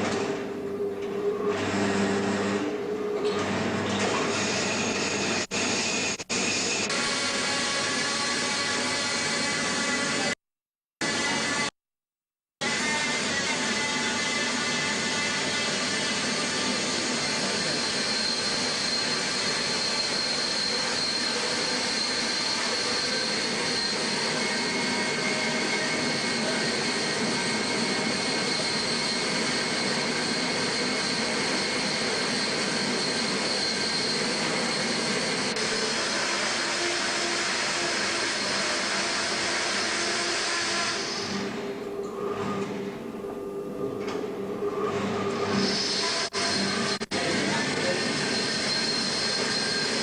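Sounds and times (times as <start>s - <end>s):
bandsaw whining: 12.6s - 42.8s, 44.7s - 50.0s.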